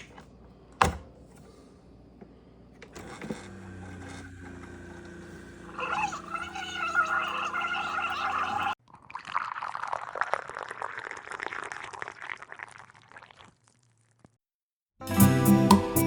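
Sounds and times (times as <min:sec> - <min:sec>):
water pouring and splashing: 0:08.8 - 0:14.4.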